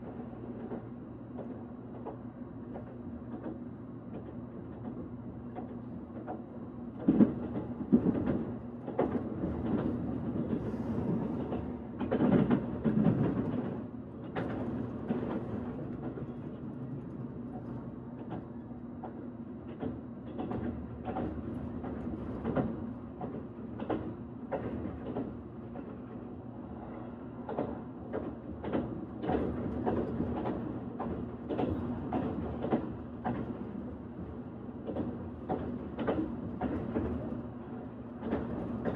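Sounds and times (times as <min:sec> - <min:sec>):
train hum on rails: 0:00.0 - 0:38.9.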